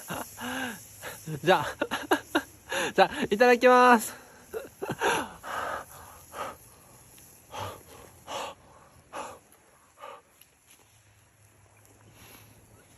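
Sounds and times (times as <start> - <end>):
person breathing: 0.4 - 1.2, 5.0 - 10.3.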